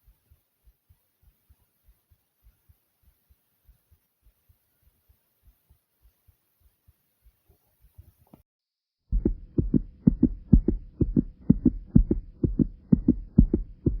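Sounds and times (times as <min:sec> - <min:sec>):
faint soft thumps: 0:09.1 - 0:14.0
faint steady hum: 0:09.1 - 0:14.0
human heartbeat: 0:09.1 - 0:14.0.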